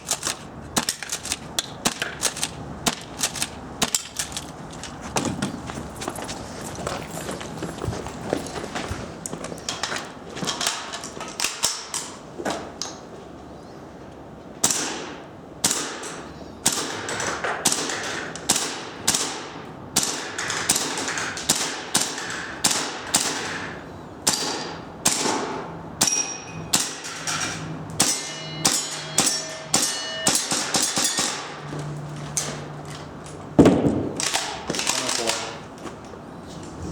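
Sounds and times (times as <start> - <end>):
pellets hitting ringing targets: 26.0 - 31.7
airsoft gun shots: 33.6 - 35.5.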